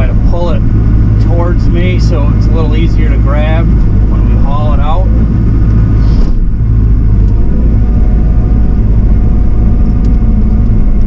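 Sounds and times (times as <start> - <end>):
excavator diesel engine rumbling: 0.0 - 11.0.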